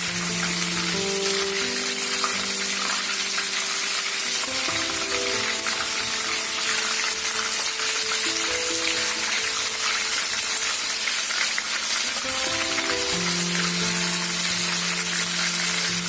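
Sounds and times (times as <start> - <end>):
chicken deep-frying in oil: 0.0 - 16.0
soft background music: 0.0 - 16.0.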